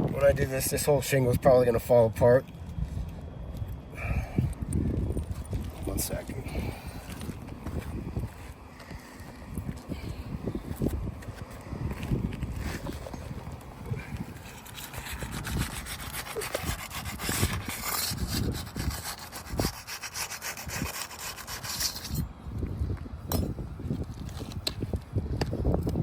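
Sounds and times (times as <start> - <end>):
tool scraping under shingles: 4.0 - 22.4, 23.3 - 25.6.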